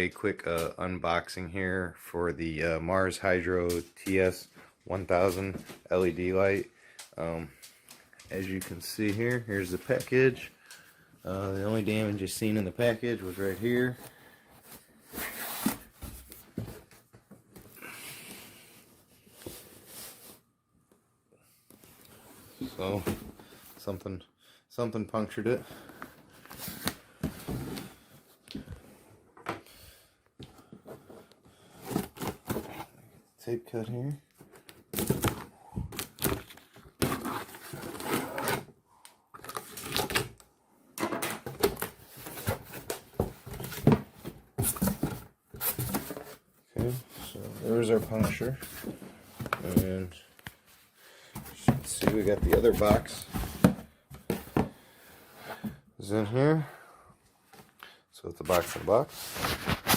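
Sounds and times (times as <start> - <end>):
cardboard scraping and tearing: 37.0 - 38.7, 58.6 - 59.9.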